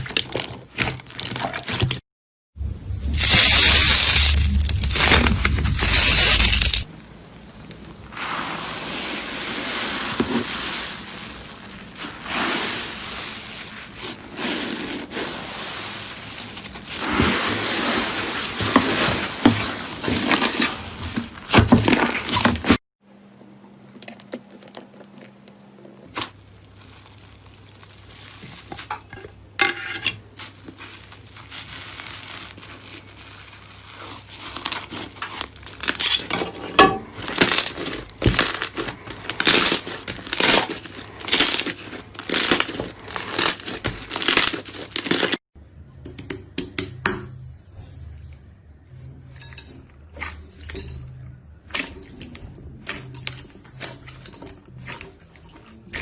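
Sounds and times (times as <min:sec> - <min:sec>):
slime crackling and popping: 0:03.1 - 0:06.9, 0:26.1 - 0:28.9, 0:37.2 - 0:45.4.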